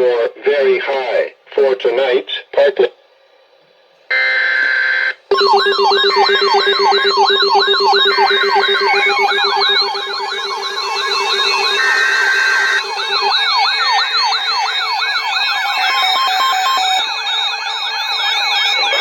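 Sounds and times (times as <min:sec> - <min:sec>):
steady low tone: 0:05.3 - 0:14.9
short steady tone burst: 0:05.3 - 0:15.4
electronic alert siren: 0:05.3 - 0:19.0
fast siren warble: 0:05.3 - 0:19.0
rising siren yelps: 0:05.3 - 0:19.0.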